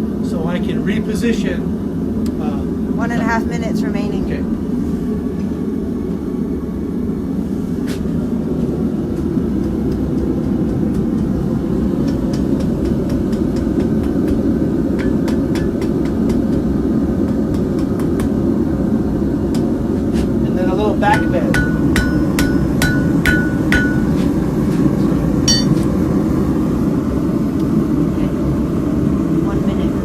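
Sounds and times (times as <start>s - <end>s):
metallic tool clinks: 25.5s - 25.8s.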